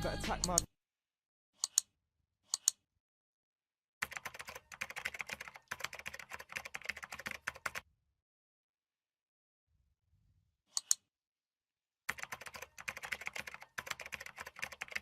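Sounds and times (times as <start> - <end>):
mechanical keyboard typing: 4.0 - 7.8, 12.1 - 15.0.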